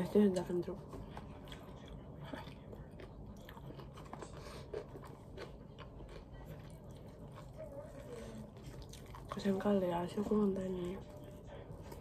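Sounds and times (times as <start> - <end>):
person chewing food: 0.8 - 12.0.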